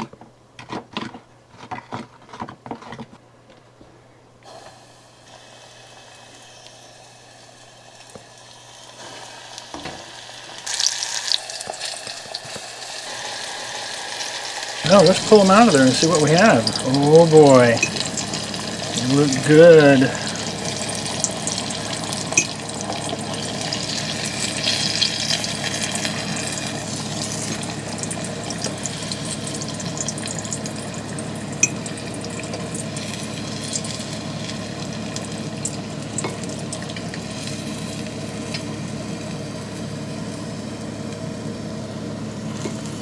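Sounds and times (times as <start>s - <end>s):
food sizzling in hot oil: 4.5s - 43.0s.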